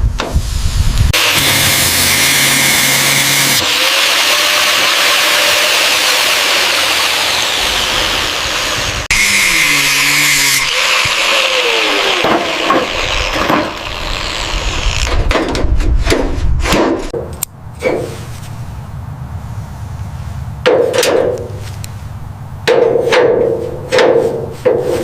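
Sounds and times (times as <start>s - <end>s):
power tool hissing: 0.4s - 15.1s.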